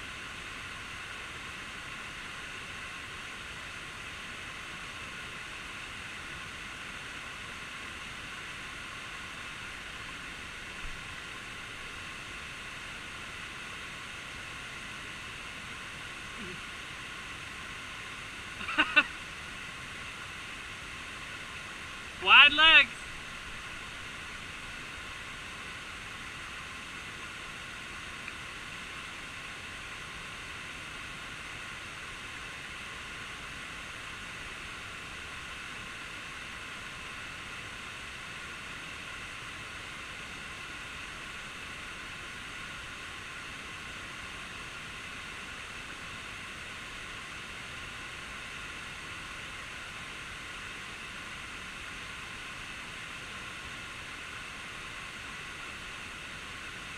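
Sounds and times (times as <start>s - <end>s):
waterfall rushing: 10.1s - 32.1s.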